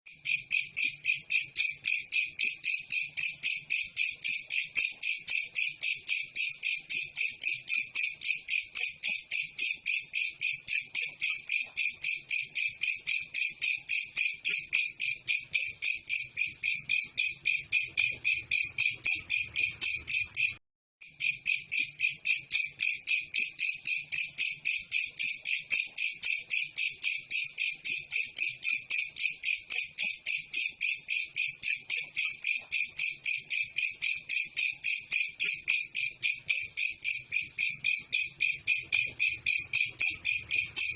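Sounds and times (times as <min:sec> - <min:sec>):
insect chirping pulses: 0:12.0 - 0:21.8, 0:34.8 - 0:40.9.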